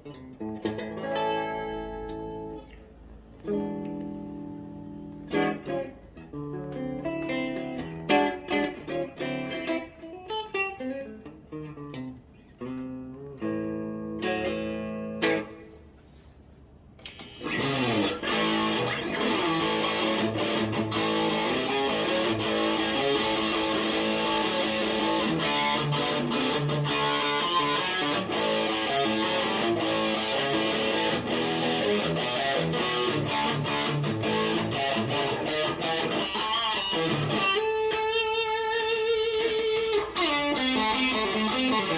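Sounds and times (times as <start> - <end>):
overdriven electric guitar playing: 0.0 - 15.9, 17.2 - 41.9
clean electric guitar notes: 17.2 - 41.9.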